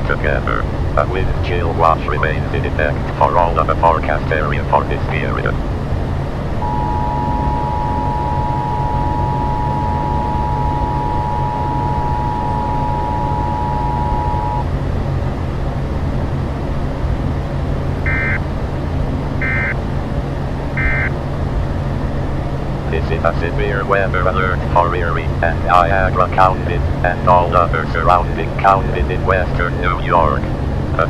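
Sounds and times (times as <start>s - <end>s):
short high beeps: 6.6s - 14.6s
two-note alert tone: 6.6s - 14.7s.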